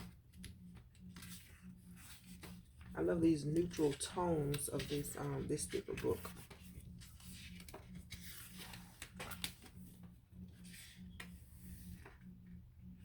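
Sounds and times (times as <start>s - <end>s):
paper pages swishing: 1.2s - 9.8s.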